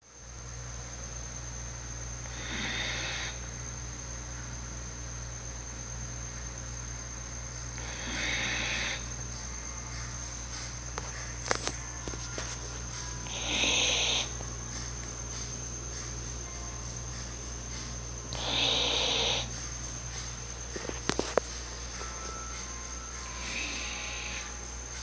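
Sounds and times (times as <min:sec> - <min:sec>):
faint high whine: 0:00.0 - 0:25.0
person snoring: 0:02.3 - 0:03.4, 0:07.8 - 0:09.1, 0:13.2 - 0:14.3, 0:18.3 - 0:19.5, 0:23.3 - 0:24.6
low hum: 0:09.0 - 0:25.0.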